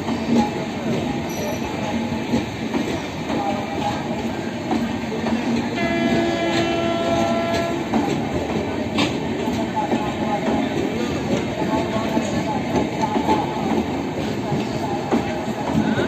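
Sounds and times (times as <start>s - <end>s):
train wheels rumbling on track: 0.0s - 16.0s
train horn: 5.7s - 8.2s.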